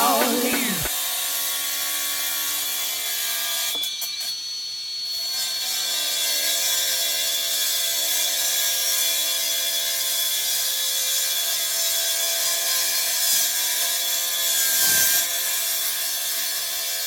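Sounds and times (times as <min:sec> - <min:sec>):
cut-off saw disc cutting: 0:00.0 - 0:00.9.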